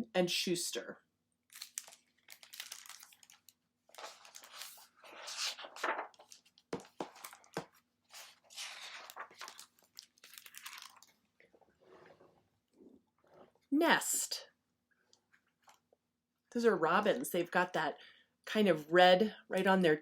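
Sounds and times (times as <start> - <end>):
paper rustling and crinkling: 1.6 - 11.2.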